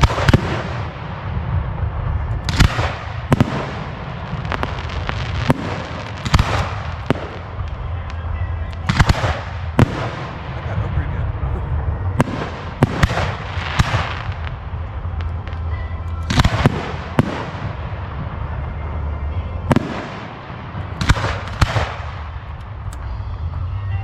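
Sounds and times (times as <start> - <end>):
crackling echoing spray: 0.0 - 10.9
fireworks bursting with bangs: 0.0 - 23.8.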